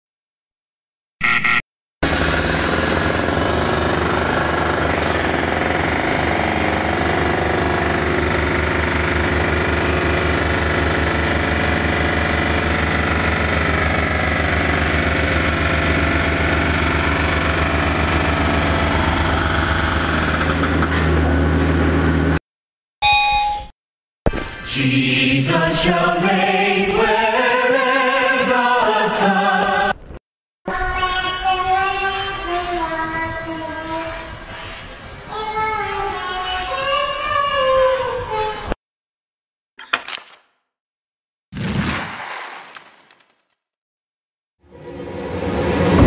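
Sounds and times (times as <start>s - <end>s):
motor-driven machine pulsing: 1.2s - 21.8s.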